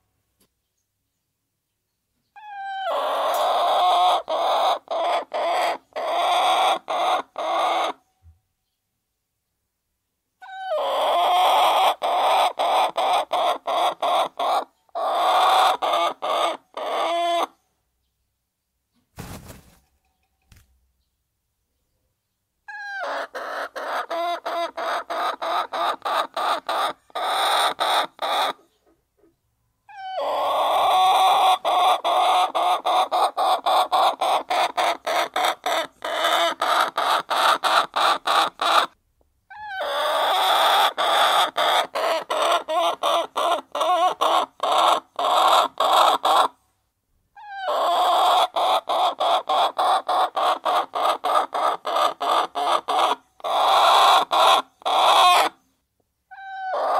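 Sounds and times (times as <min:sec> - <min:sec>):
hens clucking: 0:02.4 - 0:08.0, 0:10.5 - 0:17.5, 0:22.7 - 0:39.0, 0:39.6 - 0:46.6, 0:47.4 - 0:55.6, 0:56.3 - 0:56.9.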